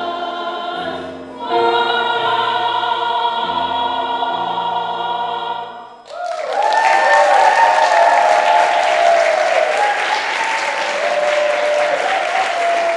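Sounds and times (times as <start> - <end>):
audience applause and cheering: 6.0 - 12.9.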